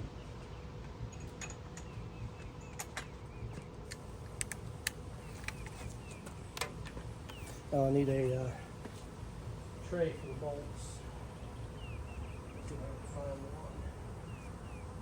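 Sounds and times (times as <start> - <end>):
metal bolts and tools clinking: 1.1 - 1.9.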